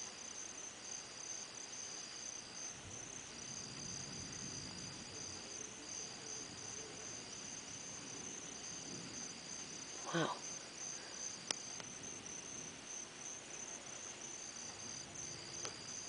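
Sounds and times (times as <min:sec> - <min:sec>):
night insects trilling: 0:00.0 - 0:16.0.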